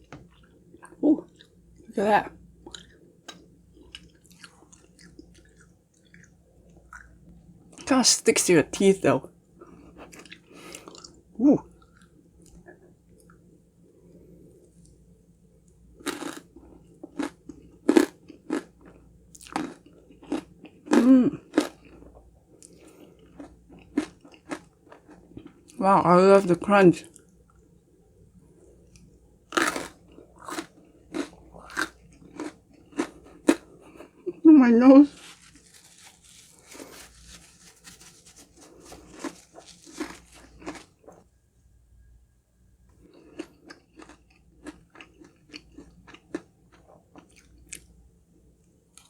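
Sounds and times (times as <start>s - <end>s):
chewing crunchy toffee: 2.6s - 7.9s, 9.6s - 13.5s, 15.9s - 25.8s, 28.5s - 34.4s, 35.1s - 41.3s, 43.0s - 48.0s.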